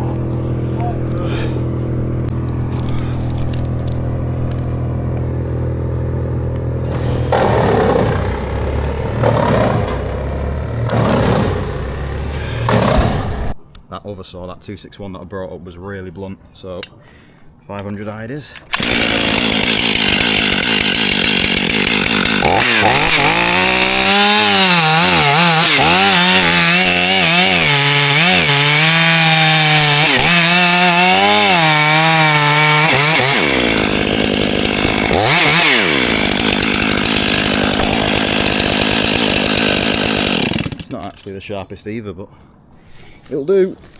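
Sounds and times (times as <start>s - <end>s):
chainsaw cutting wood: 2.2s - 13.6s, 18.7s - 41.0s.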